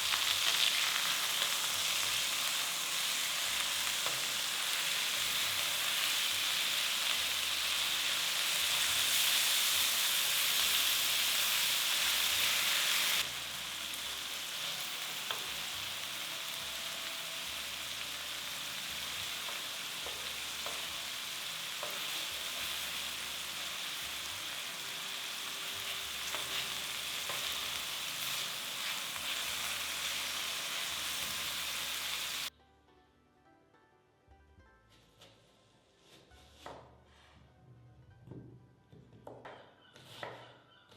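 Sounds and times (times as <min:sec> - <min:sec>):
food sizzling in a frying pan: 0:00.0 - 0:32.5.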